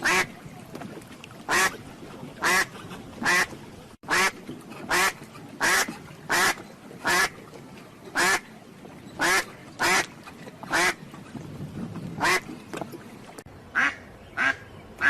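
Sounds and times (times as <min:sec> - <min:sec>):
duck quacking: 0:02.4 - 0:03.5, 0:09.2 - 0:10.1, 0:13.8 - 0:14.6.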